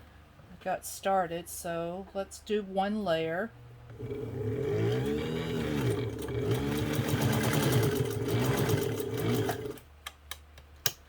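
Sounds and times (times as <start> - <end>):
sewing machine motor hum: 3.9 - 9.8.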